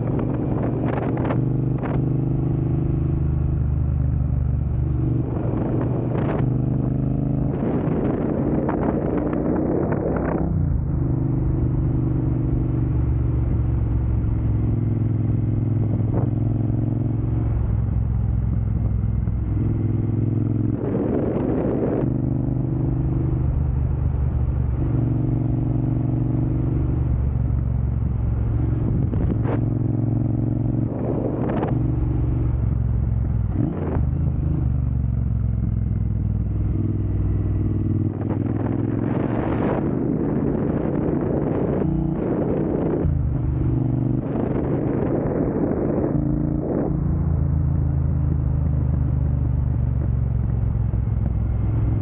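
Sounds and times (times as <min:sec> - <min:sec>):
motorcycle engine revving: 0:00.0 - 0:52.0.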